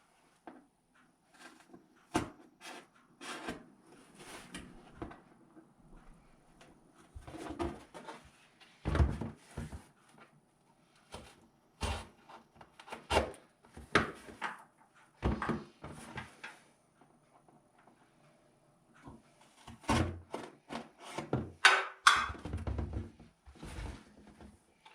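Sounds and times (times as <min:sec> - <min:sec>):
objects knocking and clunking: 0:13.8 - 0:16.6, 0:19.1 - 0:24.5.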